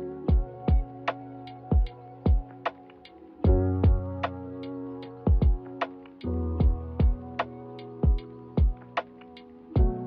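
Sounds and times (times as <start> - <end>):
held chords: 0.0 - 10.0
kick drum thumps: 0.3 - 0.9, 1.7 - 2.5, 3.5 - 4.2, 5.3 - 5.7, 6.6 - 7.2, 8.0 - 8.8, 9.8 - 10.0.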